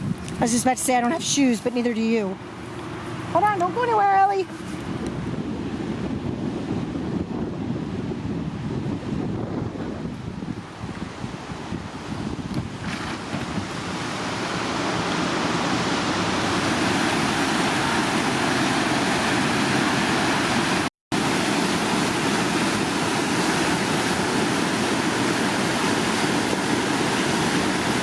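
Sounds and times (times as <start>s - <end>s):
river whitewater rushing: 11.3s - 28.0s.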